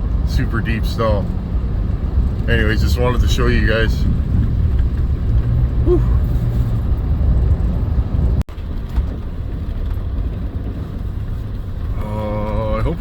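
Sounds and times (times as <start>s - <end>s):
truck engine and tyres rumbling: 0.0s - 13.0s.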